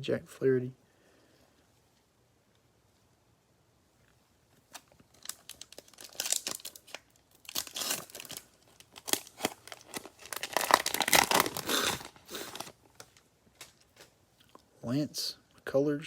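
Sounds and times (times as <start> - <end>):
card pack wrapper crinkling: 4.7 - 14.2.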